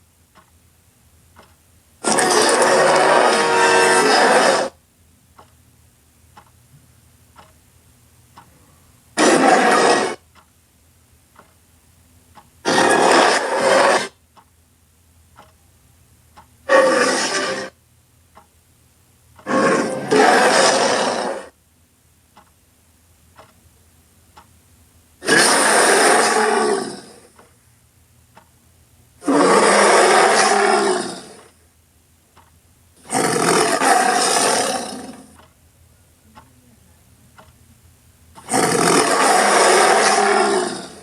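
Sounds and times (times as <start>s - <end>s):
bear roaring: 2.0s - 4.8s, 9.2s - 10.2s, 12.7s - 14.2s, 16.7s - 17.7s, 19.4s - 21.5s, 25.2s - 27.3s, 29.2s - 31.6s, 33.0s - 35.4s, 38.4s - 41.0s.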